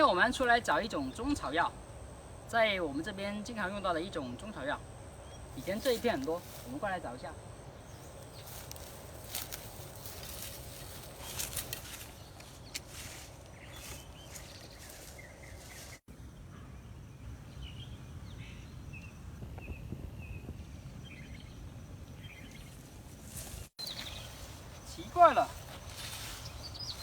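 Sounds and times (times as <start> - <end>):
low wind rumble: 0.0 - 27.0
footsteps in undergrowth: 5.5 - 7.2, 7.8 - 16.1, 22.5 - 27.0
bird chirps: 10.2 - 22.8, 23.8 - 27.0.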